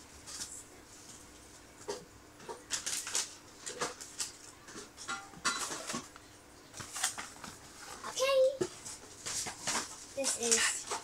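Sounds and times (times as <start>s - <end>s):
plastic packaging crinkles and clicks: 1.8s - 8.1s, 8.8s - 11.0s.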